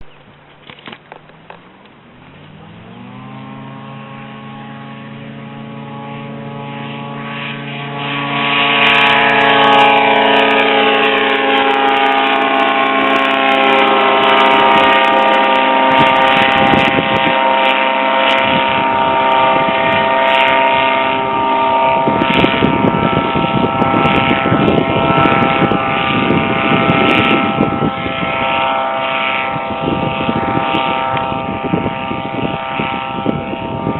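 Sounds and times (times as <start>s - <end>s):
ultralight aircraft engine droning: 0.0s - 33.9s.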